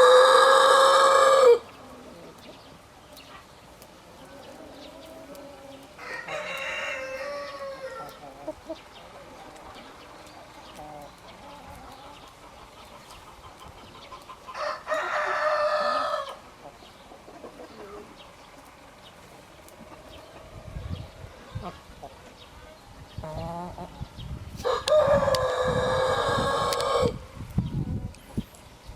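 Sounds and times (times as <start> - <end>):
rooster crowing: 0.0 - 1.7, 6.0 - 8.2, 14.5 - 16.4, 24.6 - 27.2
chickens clucking softly: 0.0 - 28.9.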